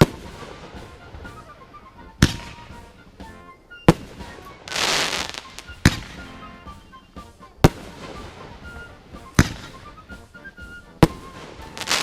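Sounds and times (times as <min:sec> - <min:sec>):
firework bangs: 0:00.0 - 0:06.9, 0:07.6 - 0:10.1, 0:11.0 - 0:12.0
hissing firework burst: 0:03.9 - 0:06.2, 0:11.0 - 0:12.0.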